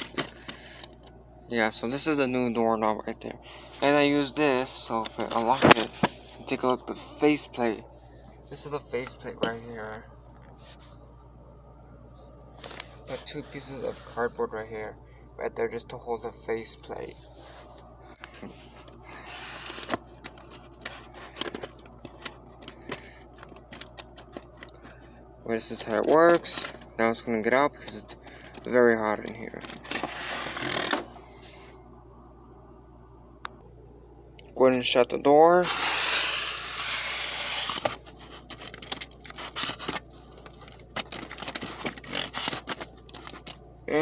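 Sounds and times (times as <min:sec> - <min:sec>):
handling clicks and scrapes: 0:00.0 - 0:01.2, 0:03.6 - 0:11.0, 0:12.1 - 0:14.4, 0:17.0 - 0:27.0, 0:27.8 - 0:31.8, 0:35.6 - 0:43.8
door closing hiss: 0:35.6 - 0:37.9.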